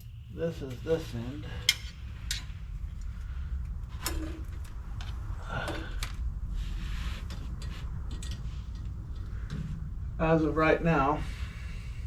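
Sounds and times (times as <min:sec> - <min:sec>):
low steady rumble: 0:00.0 - 0:12.0
light taps of tools and parts: 0:07.3 - 0:09.7.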